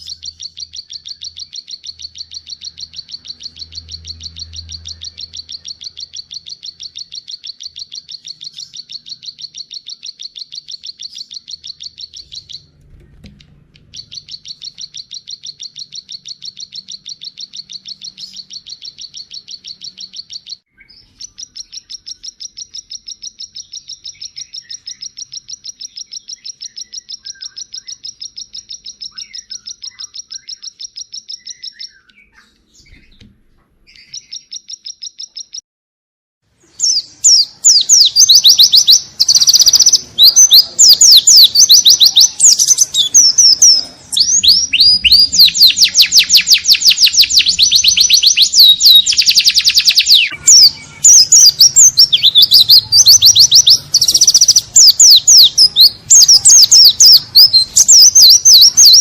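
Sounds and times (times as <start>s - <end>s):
faint lower bird calls: 0.0s - 33.3s, 33.9s - 35.6s, 36.6s - 59.0s
songbird high-pitched chirping: 0.0s - 35.6s, 36.6s - 59.0s.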